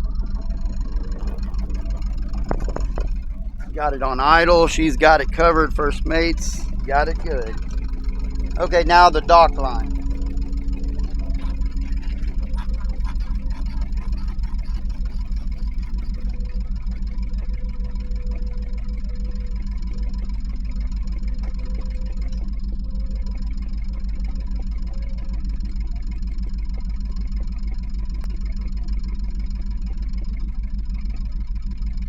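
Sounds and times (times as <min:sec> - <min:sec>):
boat engine idling: 0:00.0 - 0:32.0.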